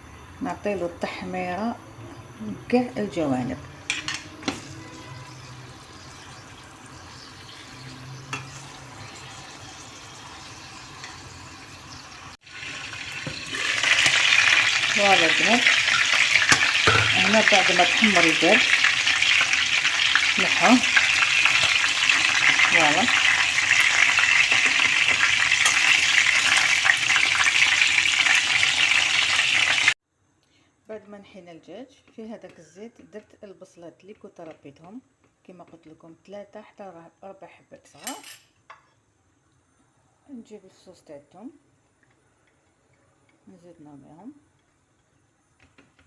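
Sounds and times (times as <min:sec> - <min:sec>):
chicken sizzling in oil: 0:03.6 - 0:30.0.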